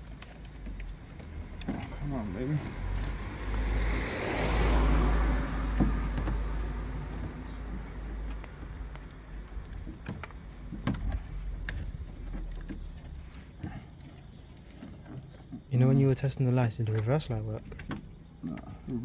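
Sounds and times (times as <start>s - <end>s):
sharp light clicks and knocks: 16.9s - 19.0s.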